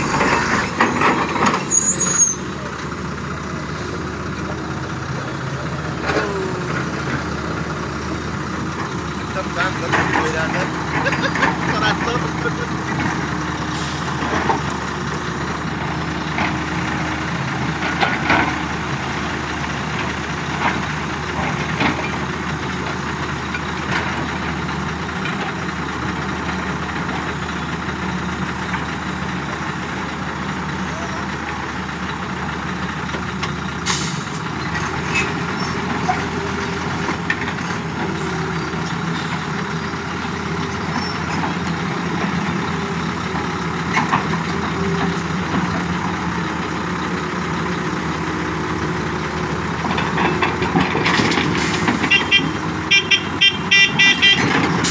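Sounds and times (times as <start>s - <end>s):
heavy machinery diesel engines: 0.0s - 54.9s.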